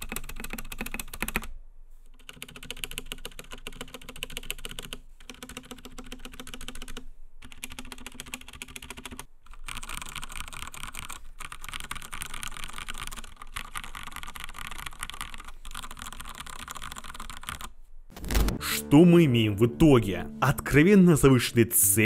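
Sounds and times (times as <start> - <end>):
fast typing on mechanical keyboard: 0.0 - 1.5, 2.2 - 17.7
man speaking: 18.6 - 22.0.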